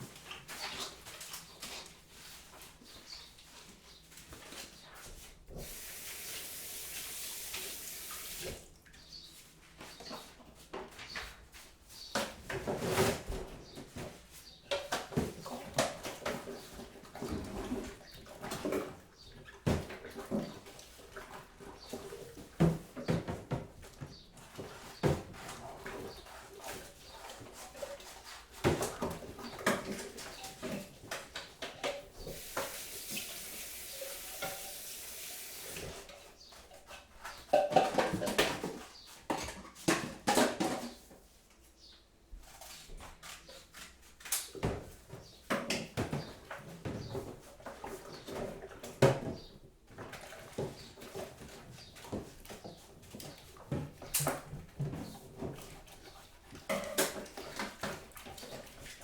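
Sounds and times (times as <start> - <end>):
water running: 5.6 - 8.7, 32.2 - 36.1
crockery and utensils clinking: 34.0 - 34.9.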